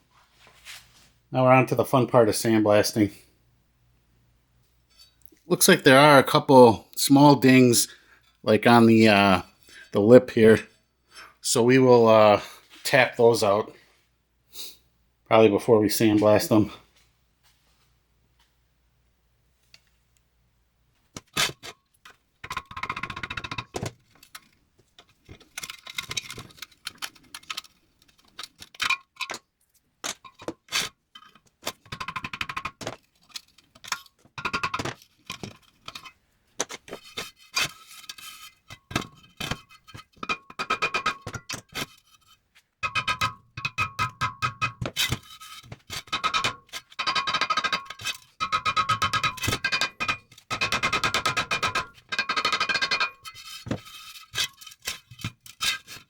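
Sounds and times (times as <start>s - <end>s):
hammer striking steel wheel rim: 42.8s - 45.3s.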